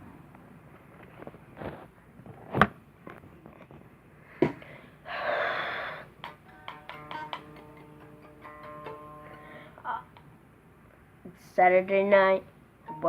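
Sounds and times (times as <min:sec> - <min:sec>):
breathy hiss: 0:04.2 - 0:06.2
guitar string ringing: 0:06.2 - 0:10.2.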